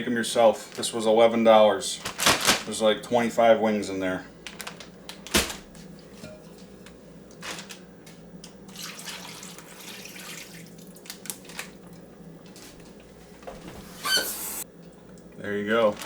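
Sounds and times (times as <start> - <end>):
liquid pouring and sloshing: 8.6 - 13.1.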